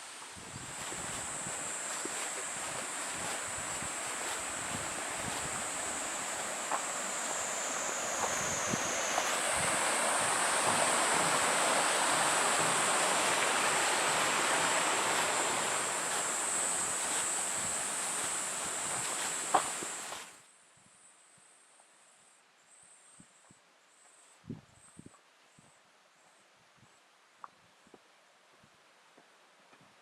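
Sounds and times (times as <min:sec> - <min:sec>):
waterfall rushing: 0:00.0 - 0:20.2
high whine: 0:00.0 - 0:20.3.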